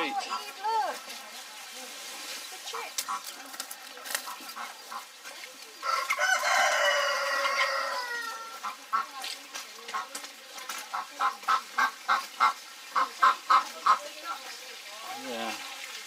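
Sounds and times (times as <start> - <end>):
rooster crowing: 5.8 - 8.6.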